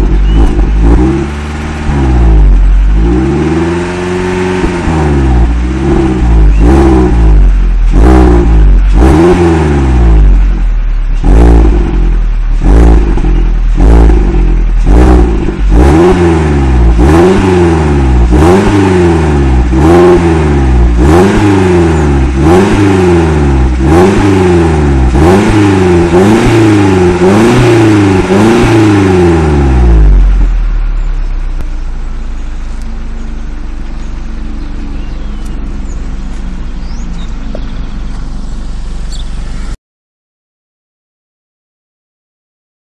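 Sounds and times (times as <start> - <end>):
car engine revving: 0.0 - 39.8.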